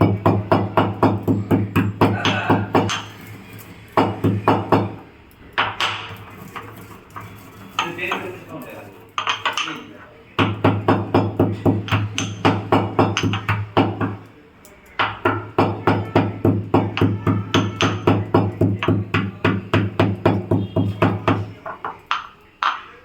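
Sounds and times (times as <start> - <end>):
pestle pounding in mortar: 0.0 - 3.3, 3.9 - 6.4, 10.4 - 14.3, 15.0 - 22.9.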